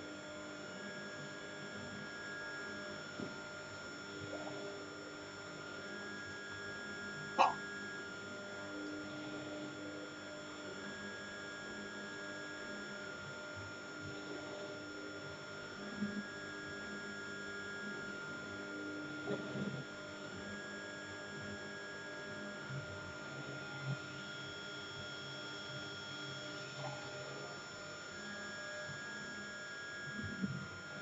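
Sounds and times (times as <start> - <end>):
electrical hum: 0.0 - 14.8.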